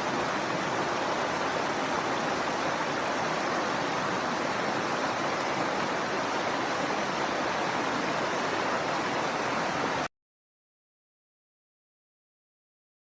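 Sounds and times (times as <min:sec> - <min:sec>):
river water rushing: 0:00.0 - 0:10.1.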